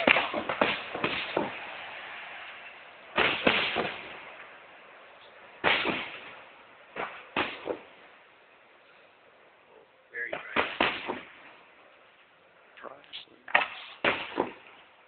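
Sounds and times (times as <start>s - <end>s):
fireworks booming with echo: 0.0s - 8.3s, 10.2s - 11.9s, 13.4s - 15.0s.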